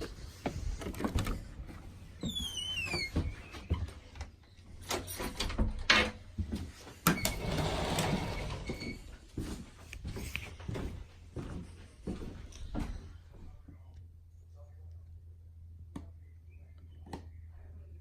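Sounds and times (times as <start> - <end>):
footsteps: 0.0 - 13.9
door squealing open: 2.2 - 3.5, 7.1 - 9.0.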